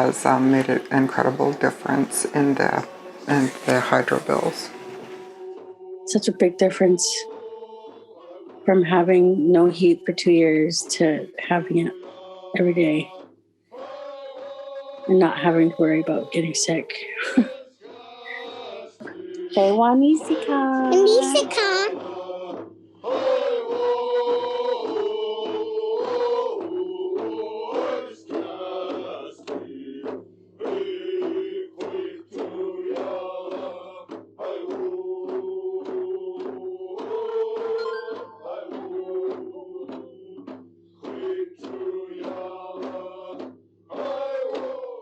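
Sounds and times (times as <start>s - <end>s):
steady drum beat: 0.0s - 5.0s, 8.6s - 12.0s
chanted singing: 0.0s - 9.9s, 11.0s - 13.2s, 13.8s - 30.0s, 30.6s - 40.4s, 41.1s - 45.0s
man chant-like singing: 18.2s - 22.0s.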